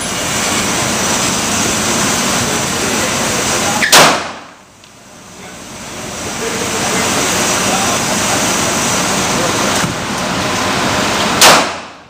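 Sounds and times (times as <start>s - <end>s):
pistol shot: 3.8s - 4.5s, 11.4s - 12.0s.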